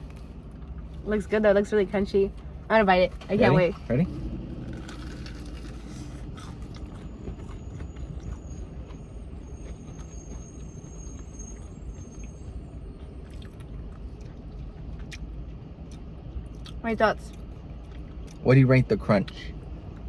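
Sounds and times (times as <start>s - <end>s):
low background rumble: 0.0s - 20.0s
fried chicken crunching: 4.6s - 18.4s.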